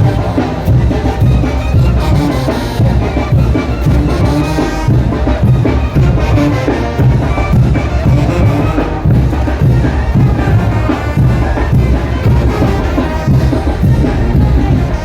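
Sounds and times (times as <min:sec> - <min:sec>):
brass band playing: 0:00.0 - 0:15.0
driving drum beat: 0:00.0 - 0:15.0.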